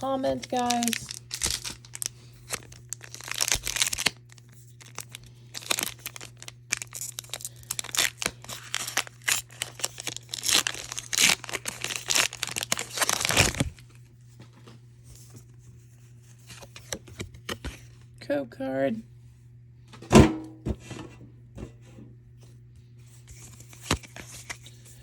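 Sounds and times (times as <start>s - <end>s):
foil wrapper tearing and crinkling: 0.0s - 14.0s, 23.3s - 25.0s.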